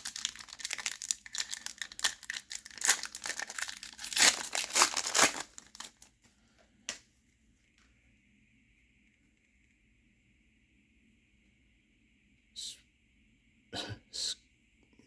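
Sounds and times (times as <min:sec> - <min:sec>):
foil wrapper tearing and crinkling: 0:00.0 - 0:06.1.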